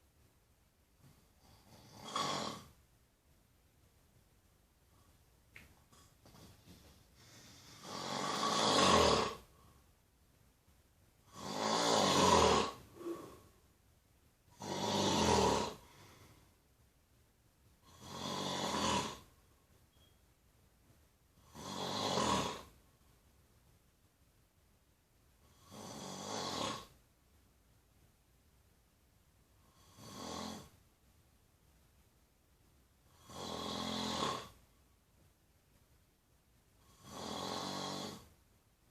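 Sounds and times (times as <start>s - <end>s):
person snoring: 1.4s - 2.7s, 7.2s - 9.5s, 11.3s - 13.5s, 14.5s - 16.4s, 17.8s - 19.3s, 21.4s - 22.7s, 25.5s - 27.0s, 29.6s - 30.8s, 33.1s - 34.6s, 36.8s - 38.3s.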